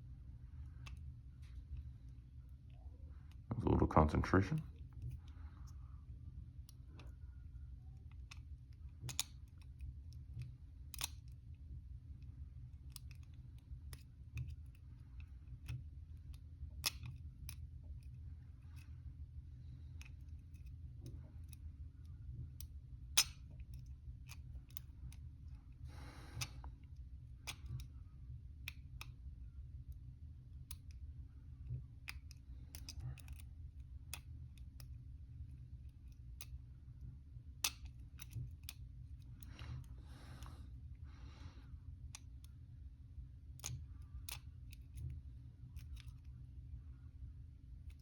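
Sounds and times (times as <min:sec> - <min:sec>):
metallic clicks of lock picking: 0:08.0 - 0:09.8, 0:10.4 - 0:11.4, 0:12.9 - 0:15.8, 0:16.8 - 0:18.9, 0:22.6 - 0:25.2, 0:31.6 - 0:33.5, 0:37.6 - 0:39.6, 0:43.6 - 0:45.1.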